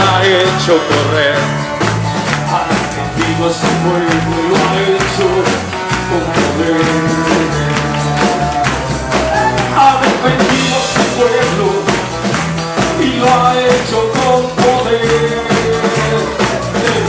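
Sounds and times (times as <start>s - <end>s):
band playing upbeat praise song: 0.0s - 17.0s.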